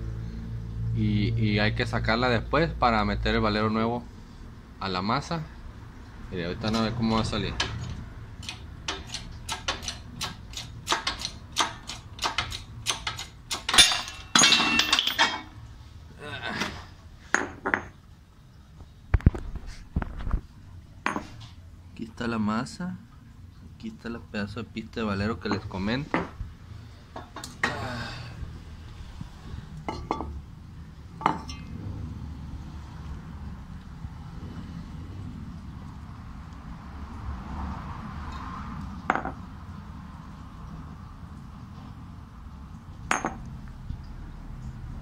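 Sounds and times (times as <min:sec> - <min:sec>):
loud metallic clatter: 0:07.6 - 0:15.5
metal parts clinking: 0:07.6 - 0:15.6
shop press clicking: 0:08.4 - 0:14.1.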